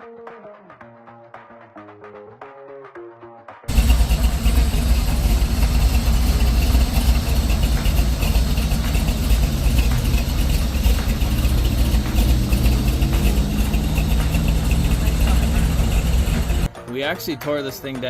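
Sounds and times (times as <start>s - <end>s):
faint rising tone: 3.7s - 16.7s
pickup engine idling: 3.7s - 16.7s.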